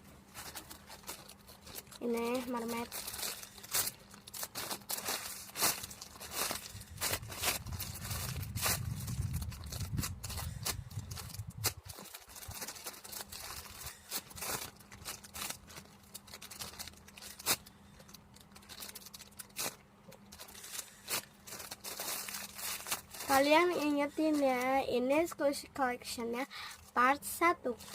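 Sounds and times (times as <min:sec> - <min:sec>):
faint steady hum: 0:00.0 - 0:27.9
soft rustles: 0:00.1 - 0:25.1
low rumble: 0:06.1 - 0:12.6.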